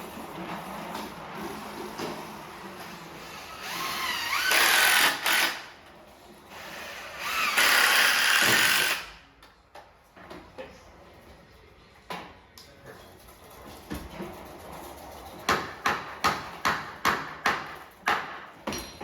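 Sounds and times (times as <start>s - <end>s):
cordless drill driving screws: 3.2s - 5.7s, 6.6s - 9.1s.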